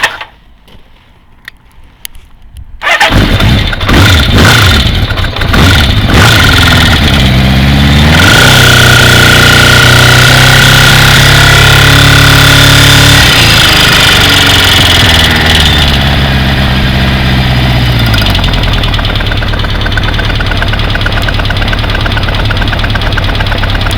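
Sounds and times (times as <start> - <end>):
motorcycle engine revving: 2.8 - 23.9
fast ticking clack in engine: 18.2 - 23.9.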